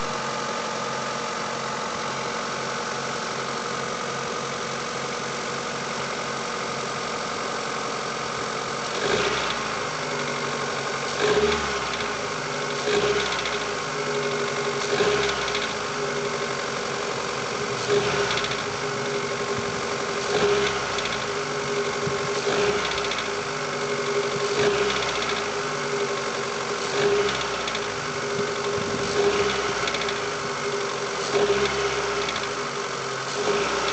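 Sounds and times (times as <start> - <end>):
car engine idling and revving: 0.0 - 33.9
engine knock: 8.8 - 33.9.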